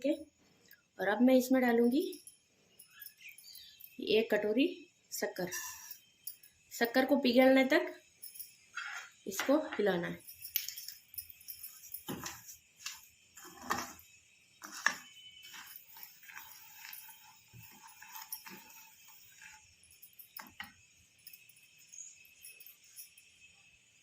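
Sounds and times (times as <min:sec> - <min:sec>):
light jingling: 0:01.8 - 0:04.0, 0:08.0 - 0:14.0, 0:15.1 - 0:23.7
spoon scraping metal pan: 0:05.5 - 0:06.0, 0:08.8 - 0:09.9, 0:12.0 - 0:20.6.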